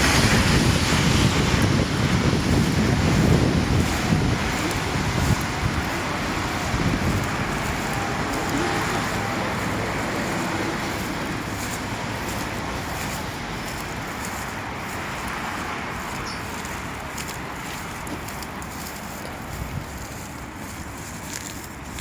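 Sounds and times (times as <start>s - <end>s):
tyres hissing on wet road: 0.0s - 22.0s.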